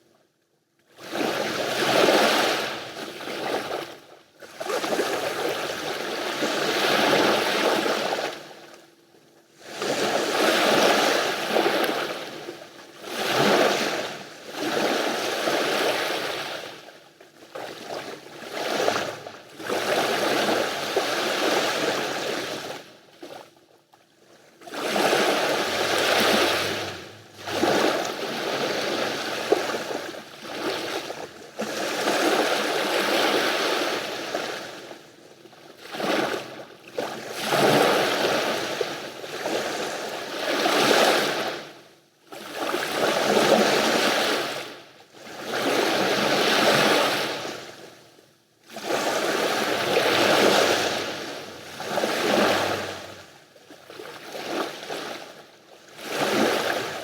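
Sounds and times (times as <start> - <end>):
sea waves breaking on shore: 1.0 - 8.5, 9.6 - 23.4, 24.2 - 41.8, 42.4 - 48.0, 48.7 - 57.0.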